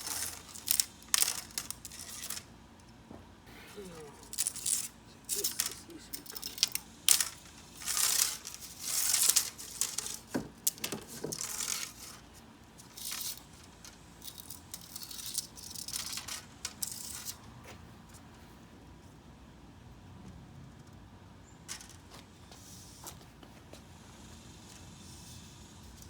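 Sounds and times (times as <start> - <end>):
mesh screen crinkling: 0.0 - 2.5, 3.8 - 17.4.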